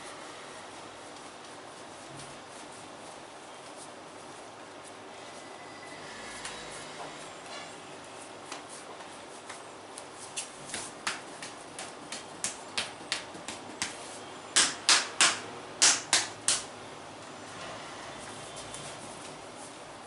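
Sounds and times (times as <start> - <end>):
hands slapping a back: 9.4 - 16.7.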